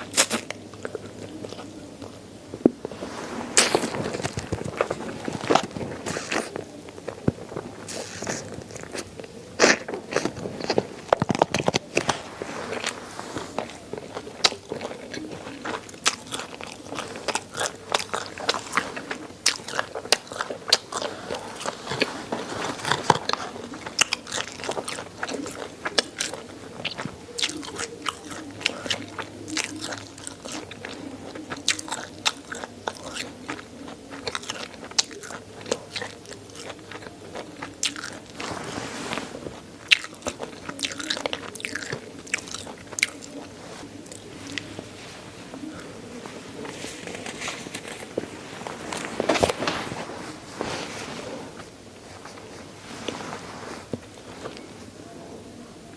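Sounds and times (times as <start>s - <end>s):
bones crunching while chewing: 0.0s - 50.9s
mouth sounds: 0.0s - 55.9s.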